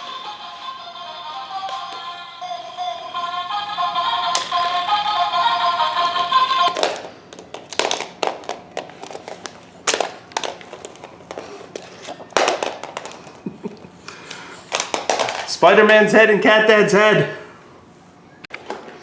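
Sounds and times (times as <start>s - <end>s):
electronic toy song: 0.0s - 6.8s
plastic toys clicking and knocking: 4.3s - 4.6s, 6.7s - 13.4s, 14.1s - 15.6s.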